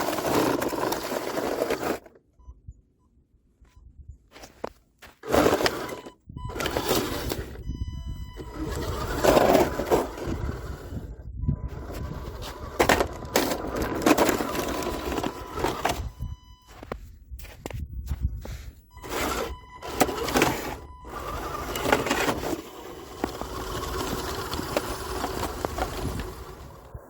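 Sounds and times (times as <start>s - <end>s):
toy truck crashing and scraping: 0.0s - 2.2s, 4.4s - 7.7s, 8.3s - 16.1s, 19.0s - 27.0s.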